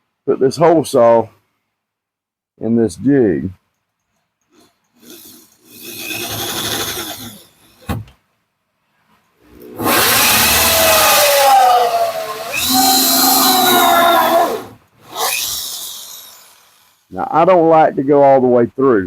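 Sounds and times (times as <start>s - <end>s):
electric drill cutting wood: 5.0s - 7.8s, 9.7s - 17.1s.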